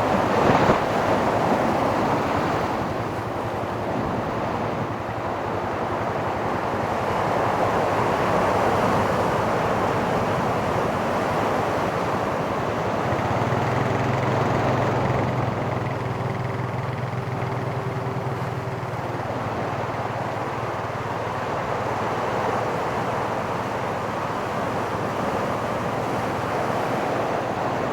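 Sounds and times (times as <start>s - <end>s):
low steady drone: 12.6s - 21.5s.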